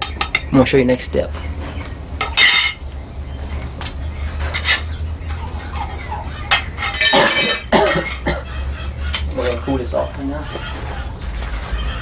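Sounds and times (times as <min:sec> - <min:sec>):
metal-on-metal clanking: 0:00.0 - 0:00.5, 0:02.2 - 0:02.8, 0:04.3 - 0:08.4
steady low hum: 0:00.0 - 0:12.0.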